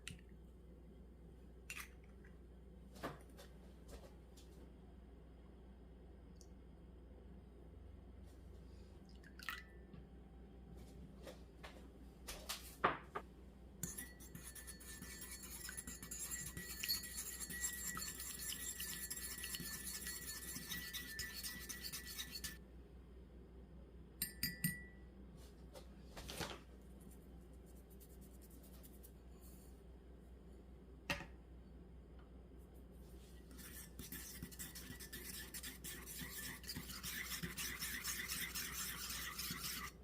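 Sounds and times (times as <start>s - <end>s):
whisking batter in a bowl: 13.8s - 22.6s, 33.4s - 40.0s.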